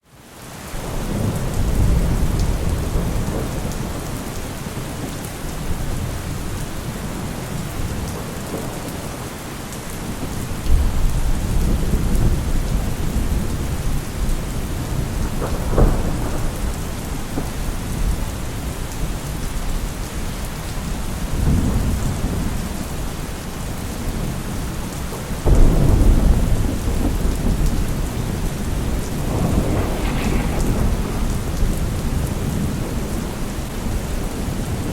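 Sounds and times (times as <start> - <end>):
heavy rain: 0.0 - 34.9
rolling thunder: 10.1 - 18.6, 25.4 - 34.9
sharp thunder crack: 25.5 - 33.6.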